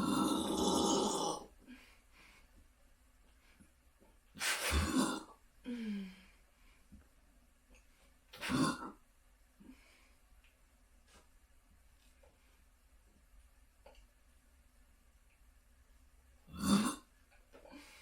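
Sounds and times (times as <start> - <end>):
person burping loudly: 0.0 - 1.5, 4.6 - 5.4, 8.4 - 9.0, 16.5 - 17.1.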